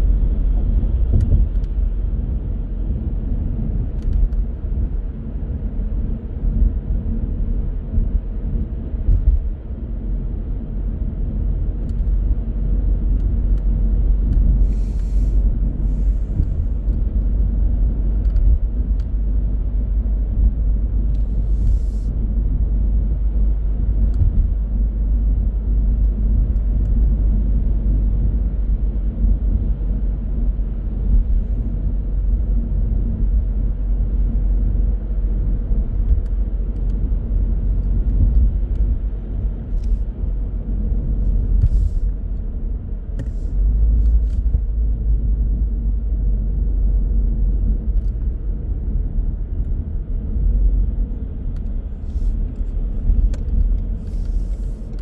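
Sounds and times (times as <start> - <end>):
car tyres and engine rumble: 0.0 - 55.0.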